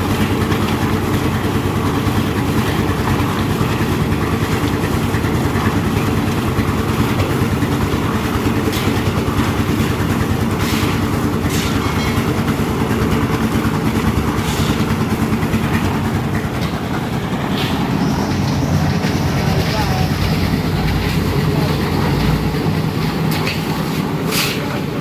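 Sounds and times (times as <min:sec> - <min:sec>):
concrete mixer engine running: 0:00.0 - 0:25.0
short scrapes and clanks: 0:10.6 - 0:12.2, 0:14.4 - 0:14.9, 0:17.5 - 0:19.0, 0:23.3 - 0:24.8.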